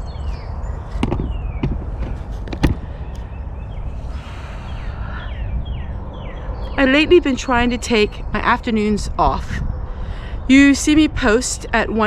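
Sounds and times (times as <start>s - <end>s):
steady low rumble: 0.0s - 12.0s
sharp knocks: 0.9s - 3.3s.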